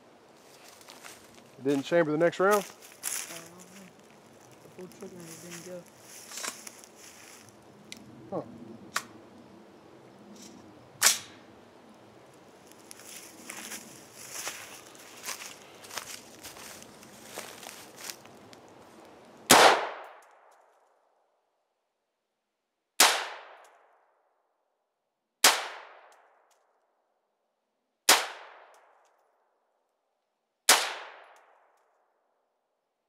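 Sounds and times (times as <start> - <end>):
rifle shots: 19.5 - 20.2, 23.0 - 23.6, 25.4 - 26.1, 30.7 - 31.4.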